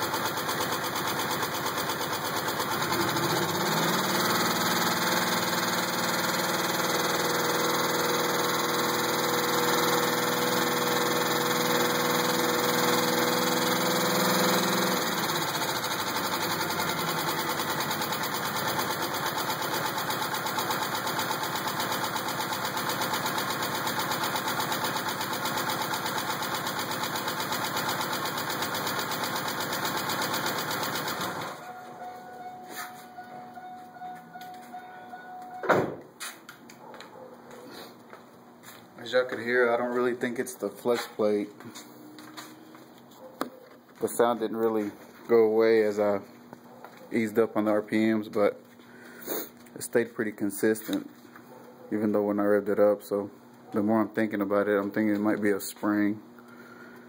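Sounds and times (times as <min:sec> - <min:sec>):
car engine knocking: 0:00.0 - 0:31.2.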